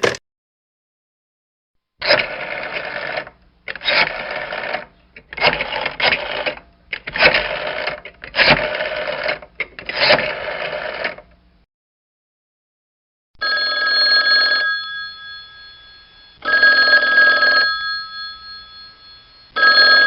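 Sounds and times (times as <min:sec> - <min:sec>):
old telephone bell ringing: 0:13.4 - 0:20.0.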